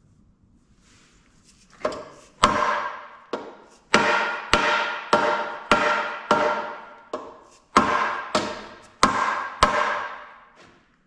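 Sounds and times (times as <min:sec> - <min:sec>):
hammer striking metal: 0:01.9 - 0:10.5.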